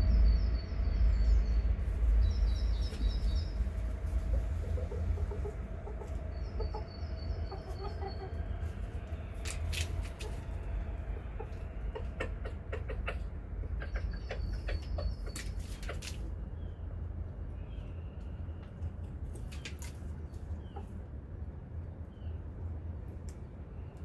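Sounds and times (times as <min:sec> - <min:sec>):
low rumble: 0:00.0 - 0:15.2
chickens clucking: 0:04.1 - 0:16.3.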